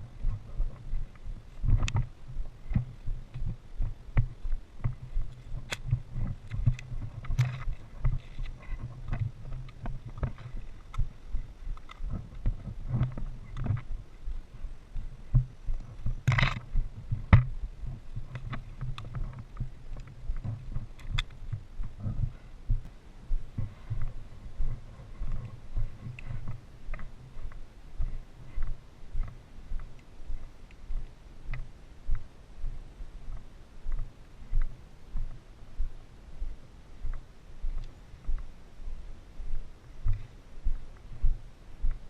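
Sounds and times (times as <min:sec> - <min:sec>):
footsteps: 0:00.0 - 0:42.0
gear jostling against microphone: 0:00.1 - 0:14.0, 0:15.7 - 0:22.4.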